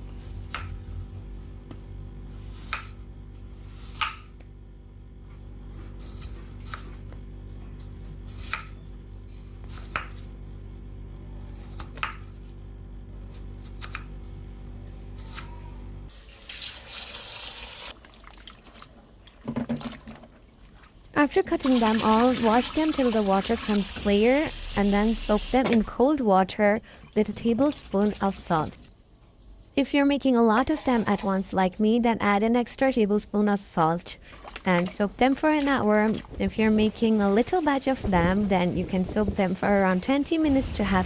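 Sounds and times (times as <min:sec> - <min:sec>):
tap water running: 0:16.2 - 0:25.8.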